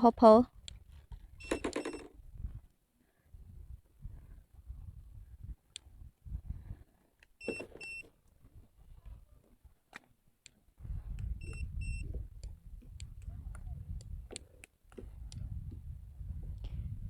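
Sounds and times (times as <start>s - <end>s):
button clicks: 1.4s - 2.1s
electronic double beeps: 1.4s - 2.1s, 11.4s - 12.1s.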